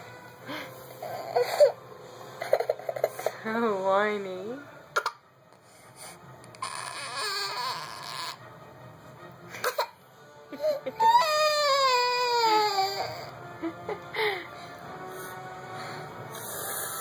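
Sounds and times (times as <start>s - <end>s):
baby crying: 0.9s - 1.8s, 6.6s - 8.4s, 10.6s - 13.3s.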